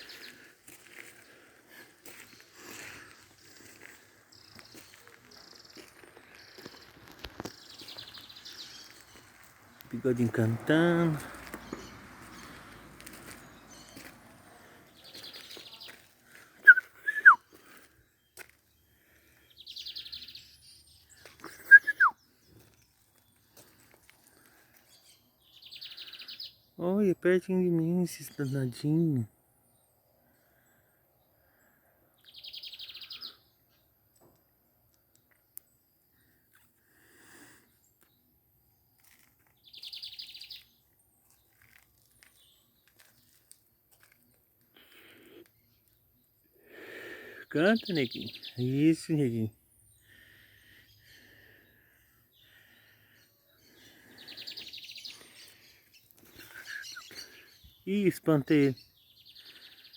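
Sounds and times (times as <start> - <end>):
bird singing trills and whistles: 16.6 - 17.4, 19.6 - 22.3, 32.3 - 33.5, 54.2 - 57.8
songbird trilling: 16.6 - 17.4, 47.7 - 48.7
faint bird chirps: 16.6 - 18.9, 29.8 - 33.9, 49.7 - 57.9.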